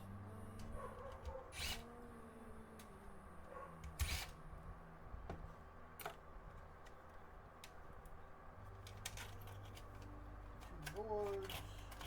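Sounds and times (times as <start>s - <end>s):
faint steady hum: 0.0s - 12.0s
light clicks and knocks of parts: 5.3s - 12.0s.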